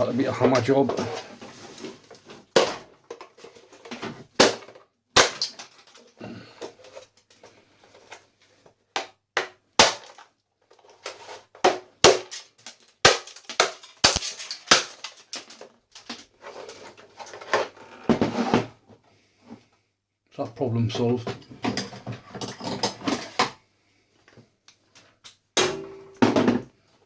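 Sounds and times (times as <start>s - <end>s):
hammer striking plastic casing: 4.4s - 5.8s, 8.9s - 10.2s, 11.6s - 15.6s.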